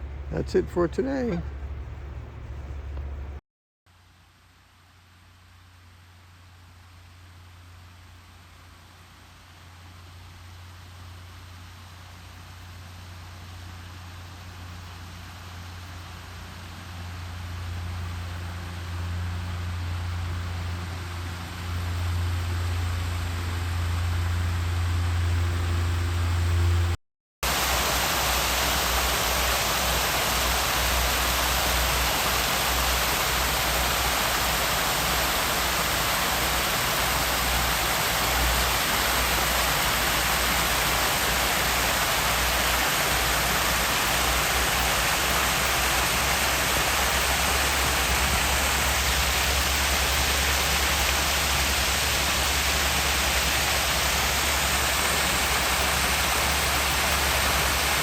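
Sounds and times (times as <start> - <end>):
low uneven rumble: 0.0 - 3.4
steady rushing noise: 28.8 - 58.0.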